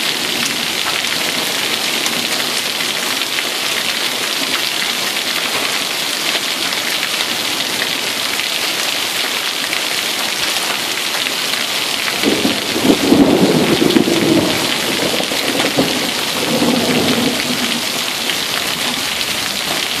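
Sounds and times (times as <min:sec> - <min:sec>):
heavy rain pouring: 0:00.0 - 0:20.0
thunder rumbling: 0:12.1 - 0:19.8.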